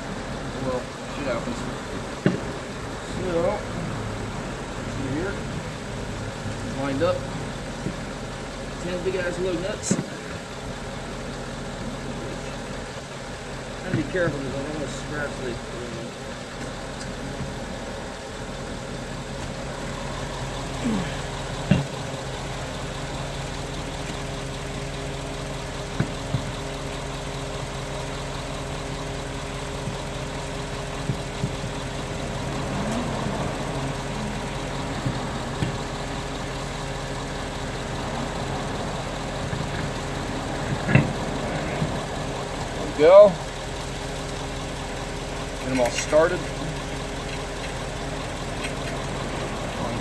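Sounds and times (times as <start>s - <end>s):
truck engine idling: 0.0s - 50.0s
metallic clunks and knocks: 2.2s - 2.5s, 21.6s - 22.2s, 34.9s - 35.9s, 40.6s - 41.9s.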